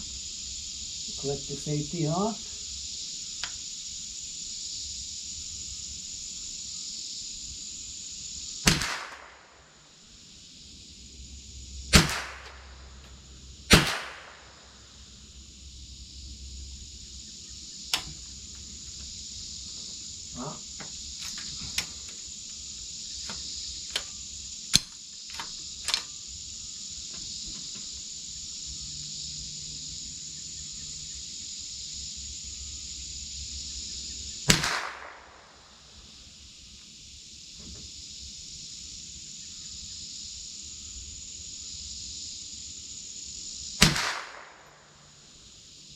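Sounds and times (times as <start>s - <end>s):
high insect buzz: 0.0s - 45.9s
rifle shots: 8.6s - 9.5s, 11.9s - 12.7s, 13.7s - 14.6s, 34.5s - 35.5s, 43.8s - 44.7s.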